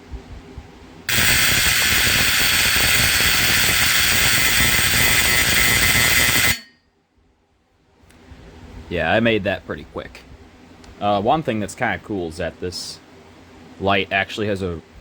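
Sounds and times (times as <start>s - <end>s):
fire alarm horn raspy buzz: 1.1s - 6.8s.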